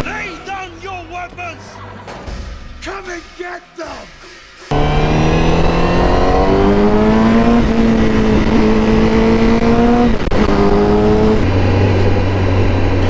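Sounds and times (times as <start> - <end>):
motorcycle engine accelerating: 4.7 - 13.0.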